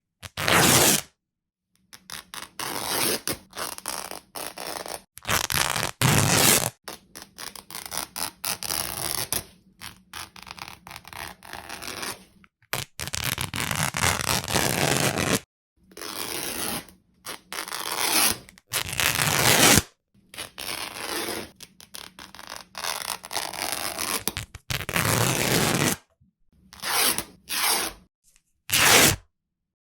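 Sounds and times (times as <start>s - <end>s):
cloth tearing: 0.2s - 1.1s, 2.6s - 6.8s, 10.4s - 15.4s, 17.6s - 19.9s, 20.6s - 26.0s, 28.7s - 29.2s.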